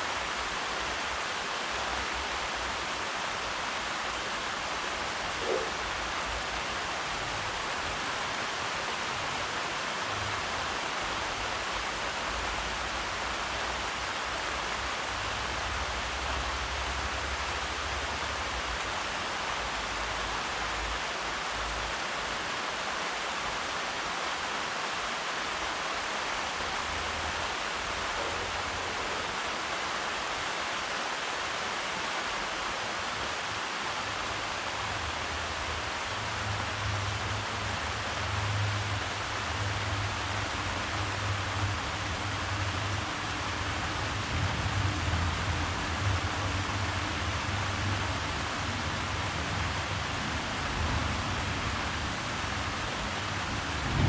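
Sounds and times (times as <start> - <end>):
rain falling: 0.0 - 54.0
low rumble: 53.4 - 54.0.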